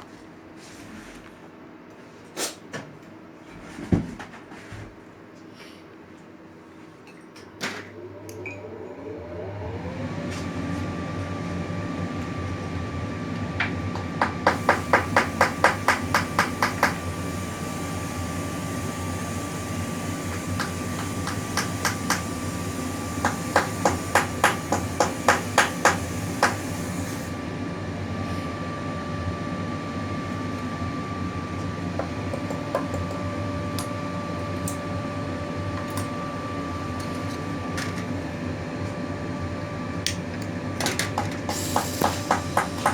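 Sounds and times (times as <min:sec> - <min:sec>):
rapid hammering on metal: 0:14.2 - 0:17.0, 0:23.2 - 0:26.6, 0:41.5 - 0:42.9.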